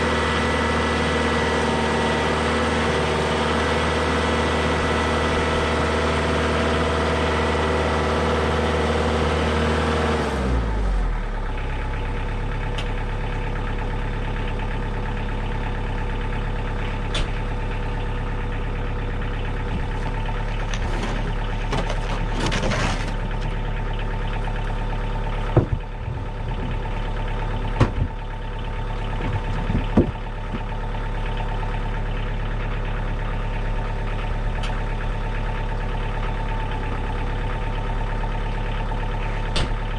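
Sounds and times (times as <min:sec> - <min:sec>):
diesel tractor engine: 0:00.0 - 0:39.9
sharp knocks: 0:25.6 - 0:25.9.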